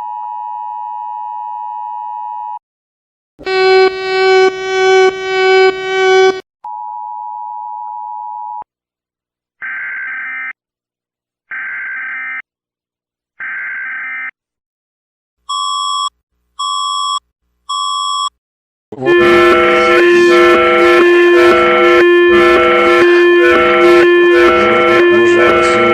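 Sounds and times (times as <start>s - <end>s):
emergency alert tones: 3.4s - 6.4s, 19.0s - 25.9s
loud multi-tone musical sound: 19.0s - 25.9s
short beeps: 19.0s - 25.9s.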